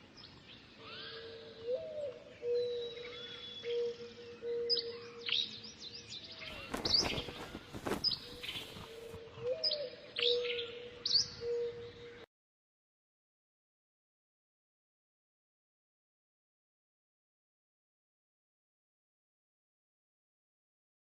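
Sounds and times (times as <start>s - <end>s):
birds chirping: 6.3s - 12.2s.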